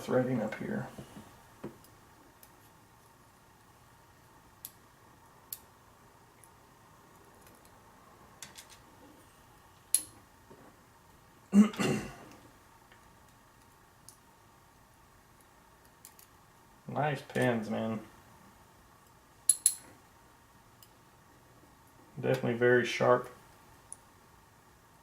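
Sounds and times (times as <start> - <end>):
metallic clicks and taps of lock: 19.5 - 19.8.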